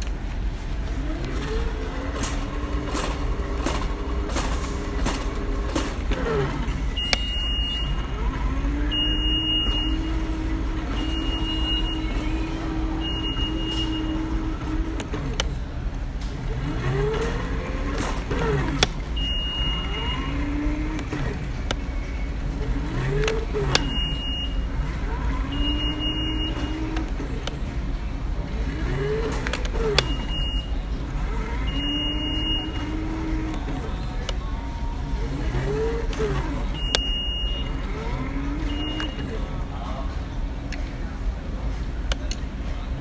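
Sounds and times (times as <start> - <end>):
car engine: 0.0 - 43.0
road noise: 0.0 - 43.0
sharp clicks: 0.8 - 27.8.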